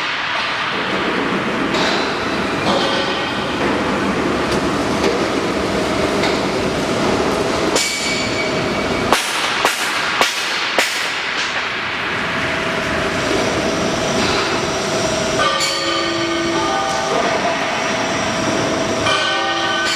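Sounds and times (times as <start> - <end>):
mixer machine running: 0.0 - 15.5.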